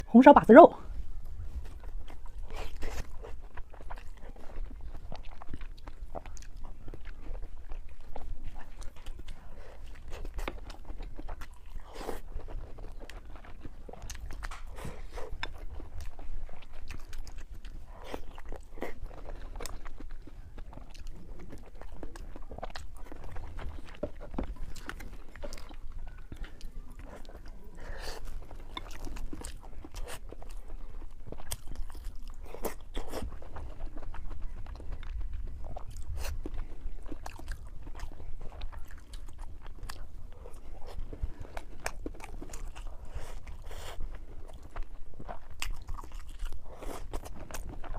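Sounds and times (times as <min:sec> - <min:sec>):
person chewing crunchy food: 0:01.1 - 0:47.9.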